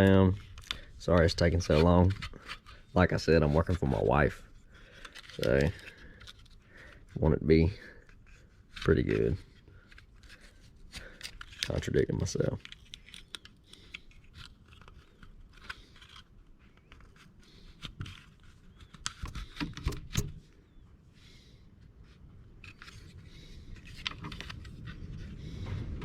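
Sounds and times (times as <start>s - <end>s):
vinyl film crinkling: 0.0s - 19.7s, 22.5s - 26.0s
vinyl film scraping: 0.0s - 20.4s, 22.5s - 26.0s
wind rumble on microphone: 23.2s - 26.0s.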